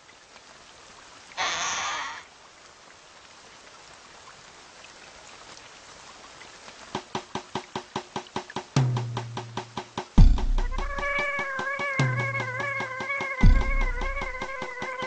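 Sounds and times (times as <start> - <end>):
steady rain falling: 0.0 - 15.0
sharp evenly spaced taps: 6.9 - 15.0.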